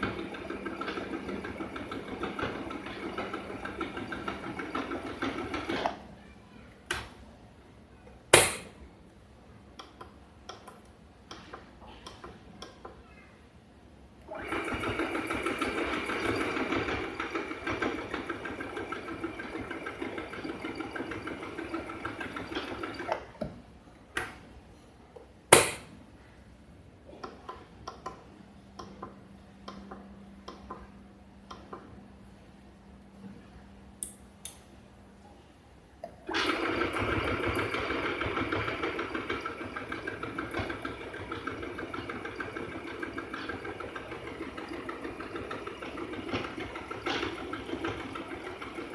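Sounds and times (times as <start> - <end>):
sewing machine running: 0.0 - 5.9, 14.3 - 23.3, 36.3 - 48.9.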